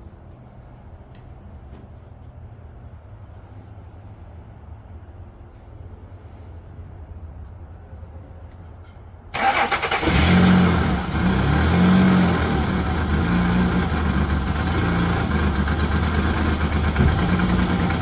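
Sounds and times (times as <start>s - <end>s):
car engine starting: 9.3s - 18.0s
car engine idling roughly: 12.5s - 18.0s.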